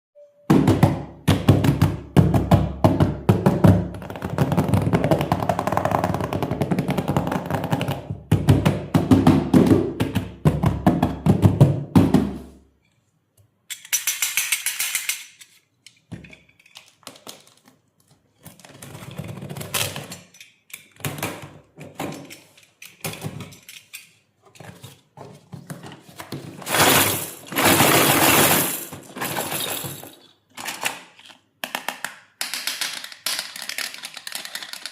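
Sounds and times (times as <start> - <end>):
toy pieces clicking and knocking: 13.7 - 17.7, 26.7 - 34.9.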